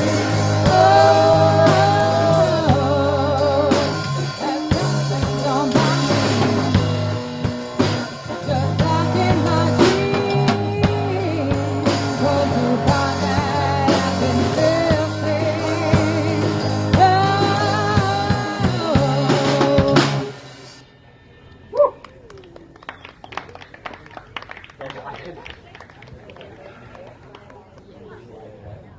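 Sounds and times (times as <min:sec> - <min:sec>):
bass notes: 0:00.0 - 0:20.4
bending lead guitar melody: 0:00.0 - 0:20.5
drum kit hits: 0:00.0 - 0:20.8
electric guitar: 0:00.0 - 0:20.8.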